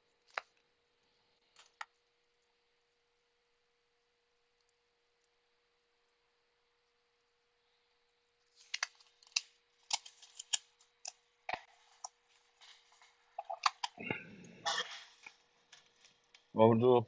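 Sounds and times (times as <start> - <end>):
faint equipment hum: 0.0 - 17.0
small parts clicking and tapping: 8.6 - 12.2.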